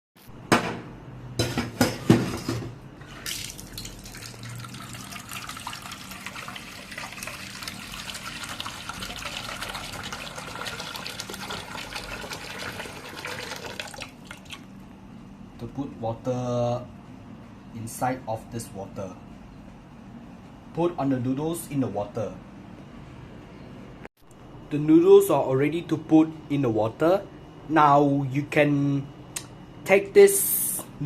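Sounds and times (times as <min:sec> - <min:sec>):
water running into container: 0:03.0 - 0:14.8.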